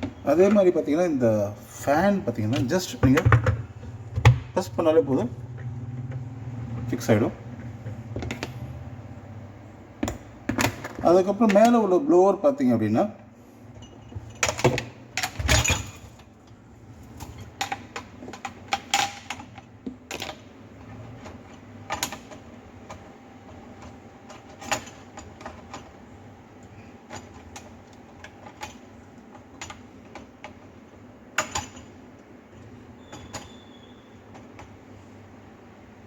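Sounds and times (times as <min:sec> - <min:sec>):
plastic parts clicking and knocking: 0:02.4 - 0:04.6.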